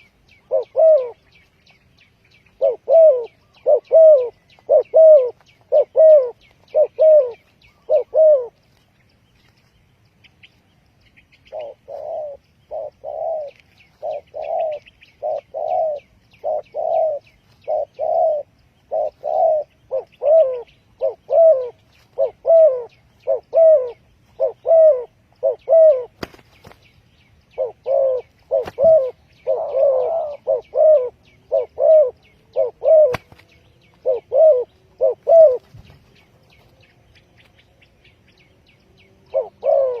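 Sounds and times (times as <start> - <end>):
dove cooing: 0.0 - 1.8, 2.4 - 8.7, 11.5 - 26.4, 27.5 - 36.9, 39.2 - 40.0
small birds chirping: 0.0 - 40.0.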